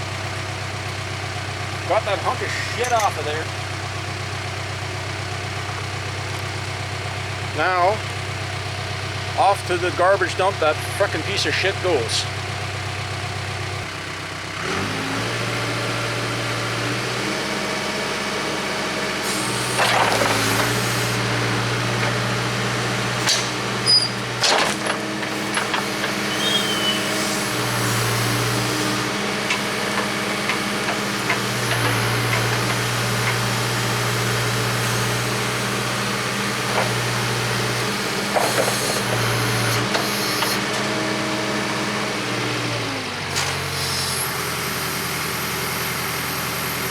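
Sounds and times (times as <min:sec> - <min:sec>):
heavy diesel engine running: 0:00.0 - 0:46.9.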